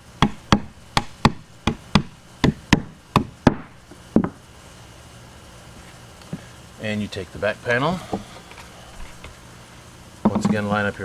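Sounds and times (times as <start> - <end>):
rubber mallet knocking wooden dowels: 0.2 - 4.4, 10.2 - 10.7.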